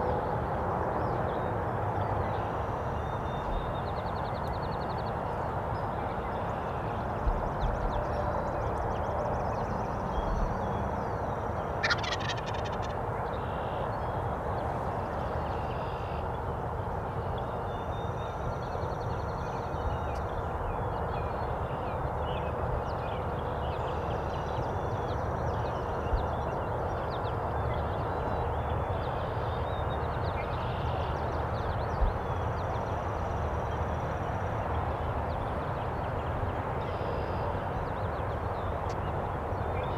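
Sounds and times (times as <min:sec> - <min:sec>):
turkey gobbling: 0:11.8 - 0:12.9.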